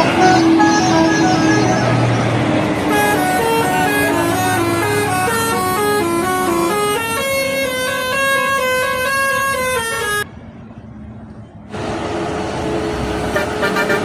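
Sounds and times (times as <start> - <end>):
multi-note musical air horn: 2.9 - 10.2, 13.3 - 14.0.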